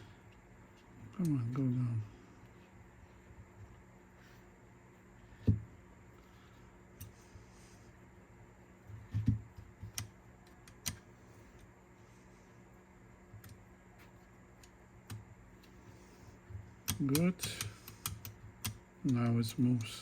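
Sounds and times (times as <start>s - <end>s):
faint steady hum: 0.0s - 20.0s
small parts clicking and knocking: 9.0s - 11.7s, 16.5s - 20.0s.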